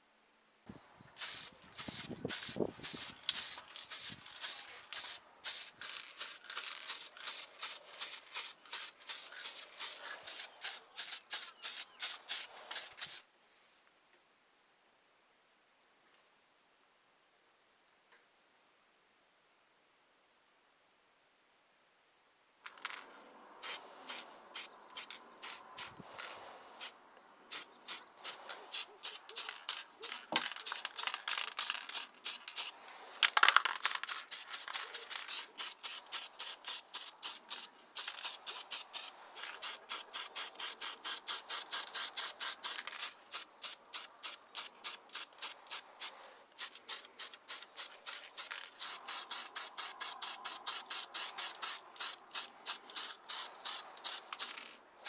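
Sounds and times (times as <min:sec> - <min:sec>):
abrasive rubbing strokes: 0:01.2 - 0:13.2
loud scrape: 0:01.2 - 0:13.2, 0:22.7 - 0:43.2.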